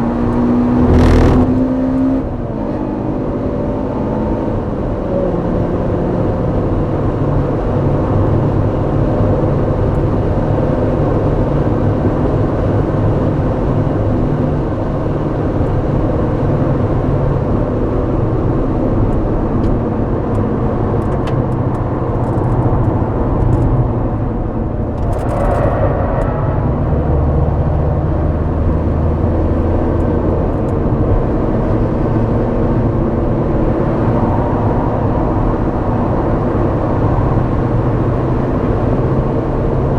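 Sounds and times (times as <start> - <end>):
car engine running hard: 0.0 - 39.9.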